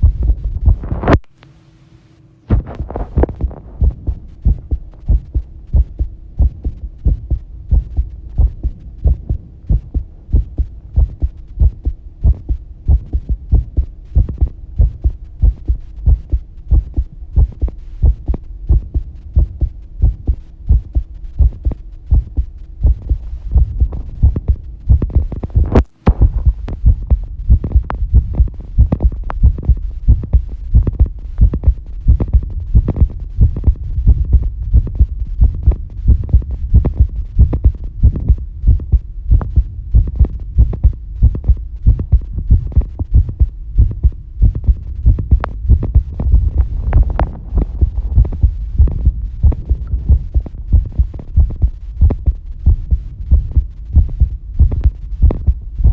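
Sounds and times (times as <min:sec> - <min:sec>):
human heartbeat: 0:00.0 - 0:01.2, 0:02.5 - 0:55.9
faint steady hum: 0:00.0 - 0:55.9
click: 0:01.1 - 0:01.5.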